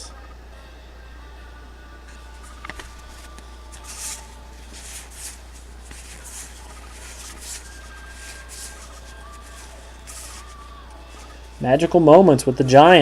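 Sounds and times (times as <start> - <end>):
cards swishing: 2.1 - 11.6.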